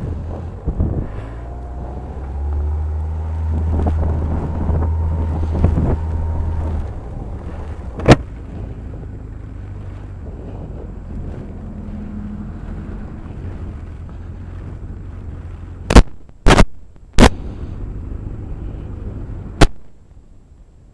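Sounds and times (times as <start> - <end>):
motorcycle engine rumbling: 0.0 - 20.9
wind buffeting microphone: 0.0 - 20.9.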